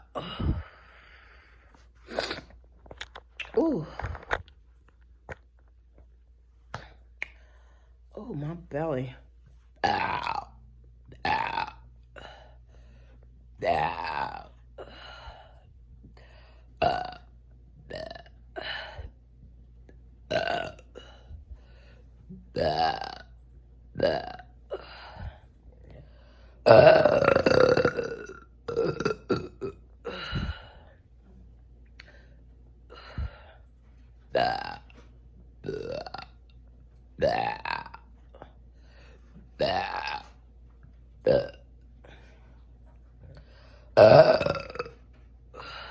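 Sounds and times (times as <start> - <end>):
person burping: 0.0 - 0.8, 9.8 - 12.5, 13.6 - 15.2, 16.8 - 17.3, 17.9 - 19.1, 20.3 - 21.2, 22.5 - 23.3, 24.0 - 25.3, 26.6 - 30.7, 34.3 - 34.9, 35.6 - 36.4, 37.2 - 38.4, 39.6 - 40.4, 41.2 - 41.6, 44.0 - 45.0.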